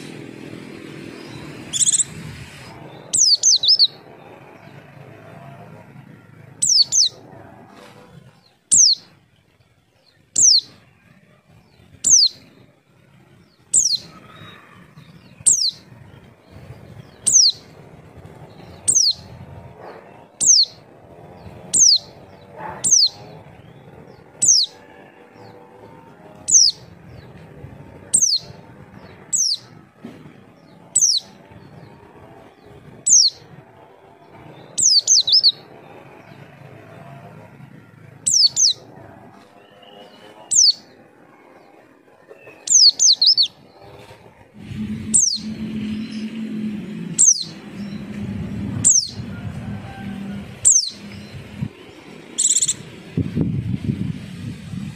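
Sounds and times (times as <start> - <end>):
low hum: 43.2 - 54.9.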